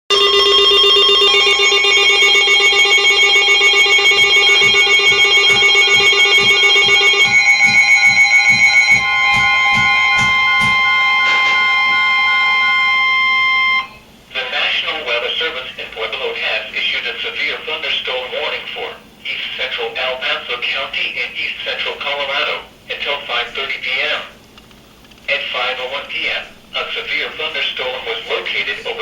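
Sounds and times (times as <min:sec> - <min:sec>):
electronic alert tones: 0:00.1 - 0:14.0.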